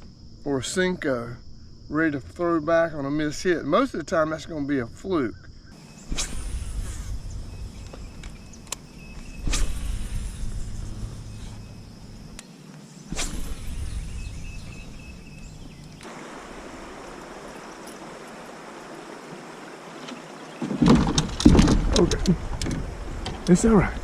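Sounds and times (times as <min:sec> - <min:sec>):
running water hiss: 0:05.8 - 0:24.0
low rumble: 0:06.1 - 0:12.4.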